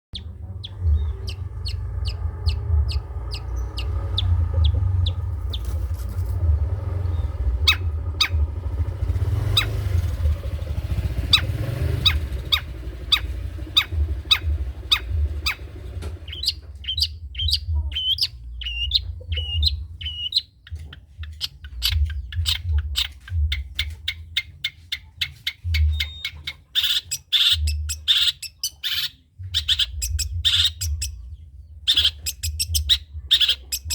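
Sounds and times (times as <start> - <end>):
low rumble: 0.1 - 24.6, 29.4 - 33.9
bird singing rapid sharp notes: 0.1 - 33.9
harsh buzzy bird notes: 0.2 - 23.8.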